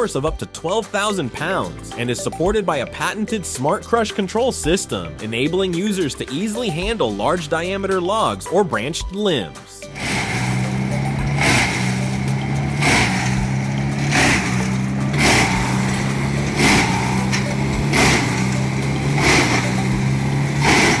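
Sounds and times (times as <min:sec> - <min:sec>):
diesel engine under load: 0:09.9 - 0:21.0
sharp rasping bursts: 0:10.0 - 0:21.0.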